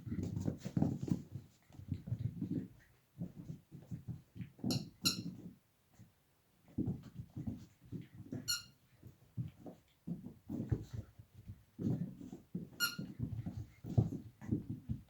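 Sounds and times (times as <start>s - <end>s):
squeaky dog toy squeaking: 4.7s - 5.3s, 8.5s - 8.7s, 12.8s - 13.1s.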